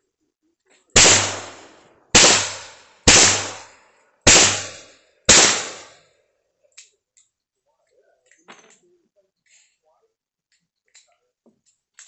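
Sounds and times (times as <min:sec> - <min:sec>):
revolver shots with echo: 0:01.0 - 0:03.7.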